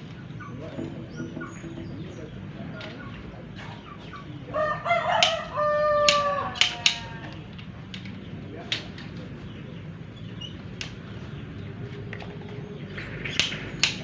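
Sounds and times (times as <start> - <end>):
rooster crowing: 4.5 - 7.2
sharp clicks or knocks: 13.2 - 14.0.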